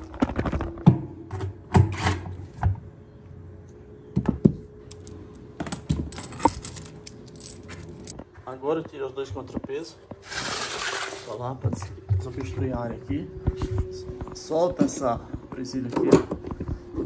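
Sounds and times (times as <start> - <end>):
metal parts clinking and knocking: 4.9 - 8.2.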